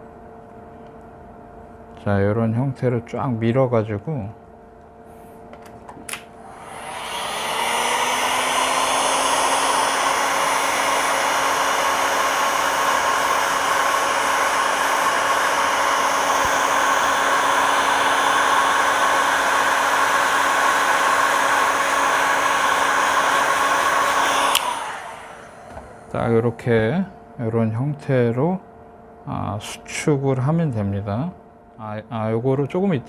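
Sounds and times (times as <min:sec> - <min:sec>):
heat gun blowing: 0:06.1 - 0:26.2.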